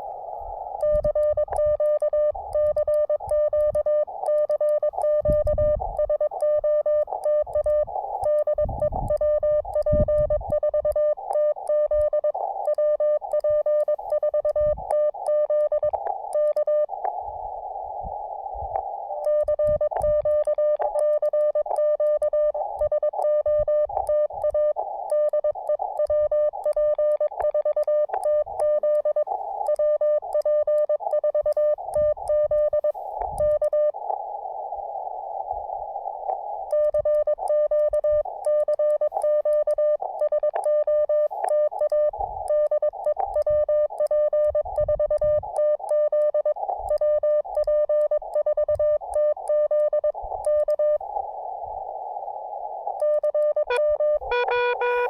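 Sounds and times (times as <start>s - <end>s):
morse code beeps: 0.8s - 16.9s, 19.2s - 34.0s, 36.7s - 51.0s, 52.9s - 55.0s
radio band hiss: 54.2s - 55.0s.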